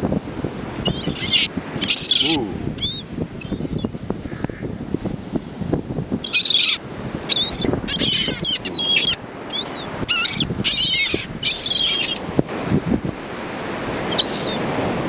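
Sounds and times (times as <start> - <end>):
wind rumbling on microphone: 0.0 - 15.0
seagulls calling: 0.8 - 4.7, 6.2 - 12.2, 14.0 - 14.7.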